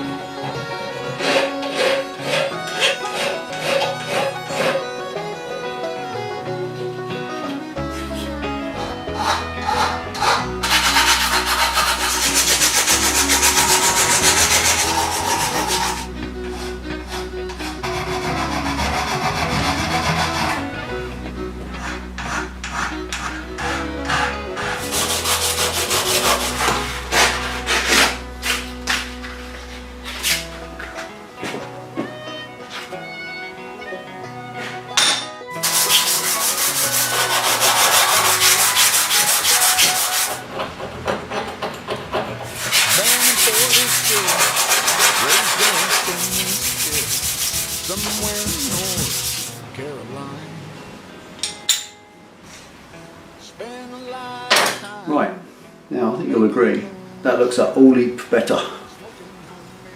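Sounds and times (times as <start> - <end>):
background music: 0.0 - 59.9
metal rasping: 1.0 - 5.1, 7.9 - 21.0, 21.7 - 31.0, 34.6 - 49.6
abrasive sanding of metal: 1.1 - 4.9, 9.2 - 20.8, 21.8 - 30.6, 35.6 - 41.1, 42.2 - 49.6.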